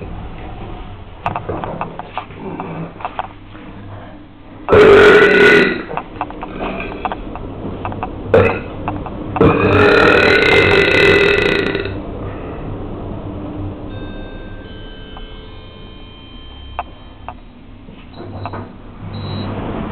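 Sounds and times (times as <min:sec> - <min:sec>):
person belching loudly: 0:04.7 - 0:07.0, 0:08.4 - 0:08.7, 0:09.4 - 0:12.0.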